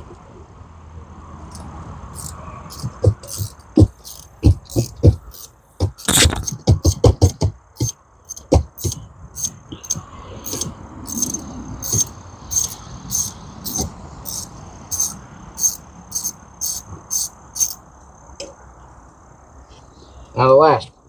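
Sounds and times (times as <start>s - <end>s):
wrench clicking on metal bolt: 1.5s - 6.5s, 8.3s - 17.8s
steady high ticking: 1.5s - 17.9s.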